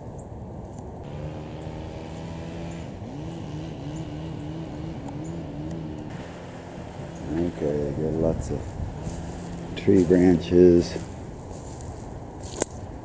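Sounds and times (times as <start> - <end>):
car engine running: 1.0 - 11.4.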